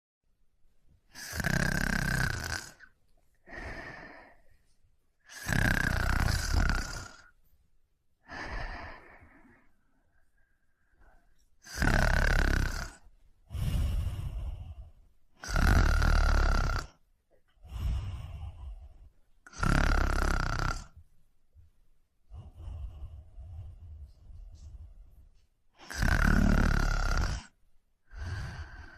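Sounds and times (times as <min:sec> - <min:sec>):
person snoring: 0:01.1 - 0:02.9, 0:03.5 - 0:04.4, 0:05.3 - 0:07.4, 0:08.2 - 0:09.7, 0:11.6 - 0:17.0, 0:17.6 - 0:21.0, 0:22.3 - 0:24.8, 0:25.8 - 0:28.9
soft breath: 0:02.8 - 0:04.9, 0:08.2 - 0:11.6, 0:12.7 - 0:16.7, 0:17.5 - 0:21.0, 0:22.1 - 0:28.9.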